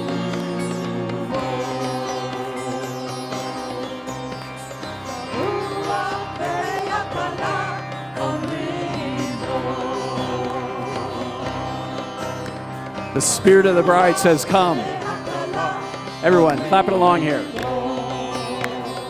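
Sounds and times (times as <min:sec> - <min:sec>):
worship band playing: 0:00.0 - 0:19.0.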